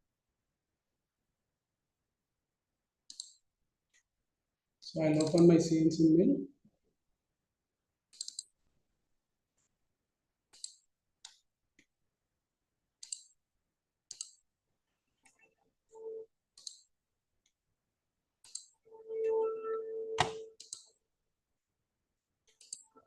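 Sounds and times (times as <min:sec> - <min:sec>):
computer mouse clicking: 0:03.1 - 0:03.4, 0:05.1 - 0:05.5, 0:08.1 - 0:08.5, 0:10.5 - 0:11.4, 0:13.0 - 0:13.4, 0:14.1 - 0:14.4, 0:16.6 - 0:16.9, 0:18.4 - 0:18.7, 0:20.2 - 0:21.0, 0:22.5 - 0:23.0.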